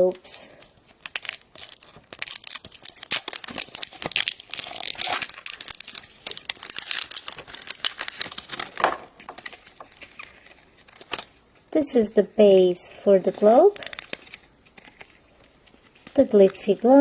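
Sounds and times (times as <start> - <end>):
packaging tearing and crinkling: 0.6 - 11.5, 13.6 - 16.2.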